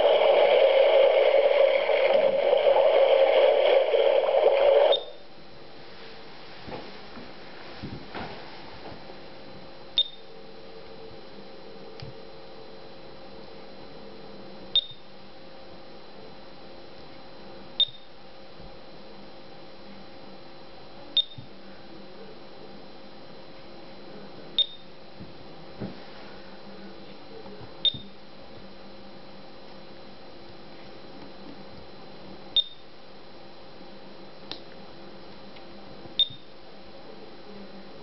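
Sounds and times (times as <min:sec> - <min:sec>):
faint steady hum: 0:00.0 - 0:38.0
alarm clock high beeps: 0:10.0 - 0:10.3, 0:17.8 - 0:18.1, 0:32.6 - 0:32.8.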